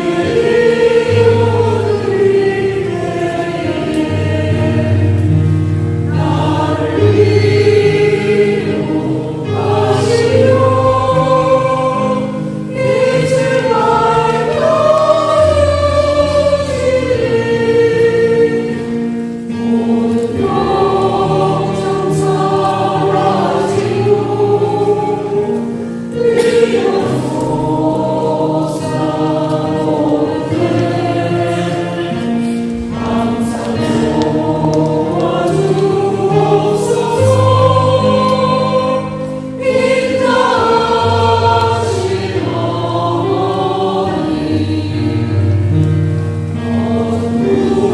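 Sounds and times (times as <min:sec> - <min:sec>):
choir singing a hymn: 0:00.0 - 0:47.9.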